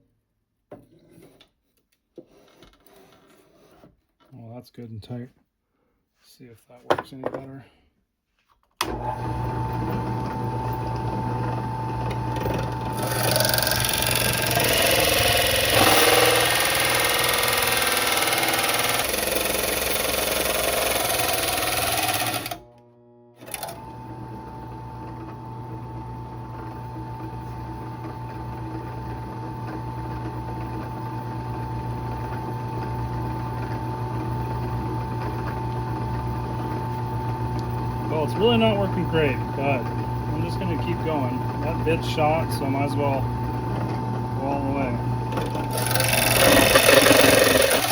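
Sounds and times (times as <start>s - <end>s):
electric drill grinding sheet metal: 12.3s - 22.7s, 44.7s - 47.9s.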